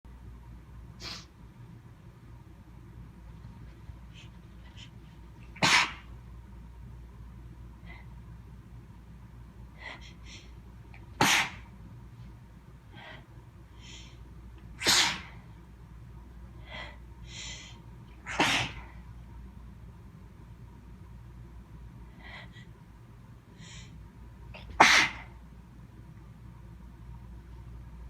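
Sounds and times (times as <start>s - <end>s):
person sneezing: 1.0s - 1.3s, 5.5s - 6.1s, 11.2s - 11.6s, 14.8s - 15.4s, 18.2s - 19.0s, 24.6s - 25.3s.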